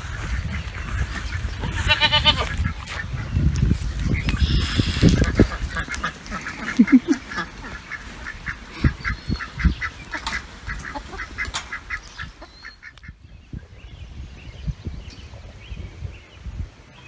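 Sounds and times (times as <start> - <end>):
ducks quacking: 0.0 - 13.2.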